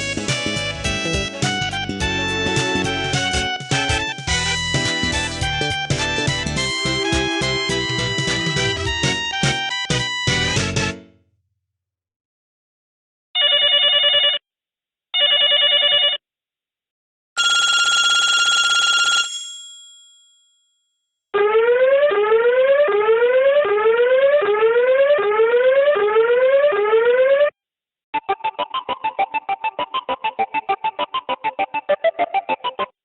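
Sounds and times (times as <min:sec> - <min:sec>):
mobile phone ringtones: 0:06.6 - 0:09.3, 0:13.4 - 0:14.4, 0:15.2 - 0:16.2, 0:17.4 - 0:19.7.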